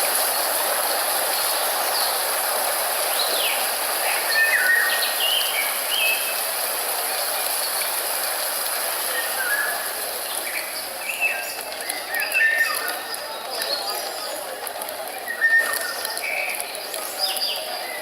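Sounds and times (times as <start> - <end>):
steady hiss: 0.0 - 12.8
birds whistling and chirping: 4.2 - 6.3, 9.2 - 9.9, 10.5 - 12.9, 15.2 - 16.6.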